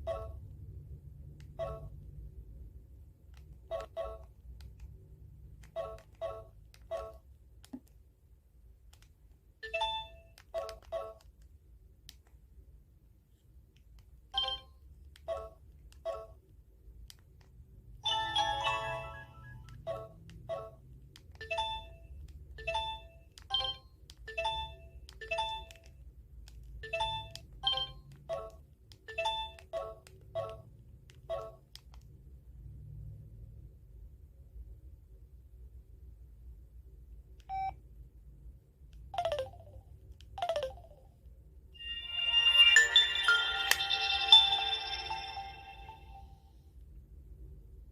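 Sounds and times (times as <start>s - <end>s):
bell-like ringtone melody: 18.1s - 19.7s, 41.8s - 46.6s.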